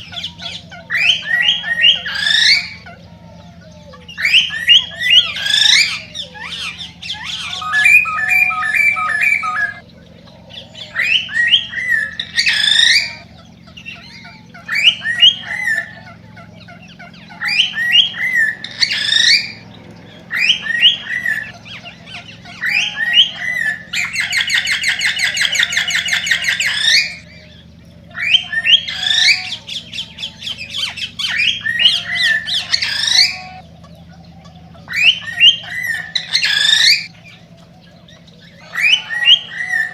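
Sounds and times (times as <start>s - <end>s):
rapid buzzing bird trill: 0.0s - 39.9s
cockatiel chirps and whistles: 7.1s - 9.8s, 34.9s - 37.1s.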